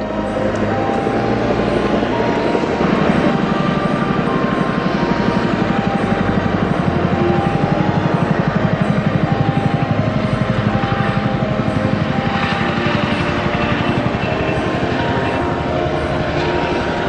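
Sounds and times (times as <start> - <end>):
helicopter engine rushing: 0.0 - 17.0
rotor blades beating: 0.0 - 17.0.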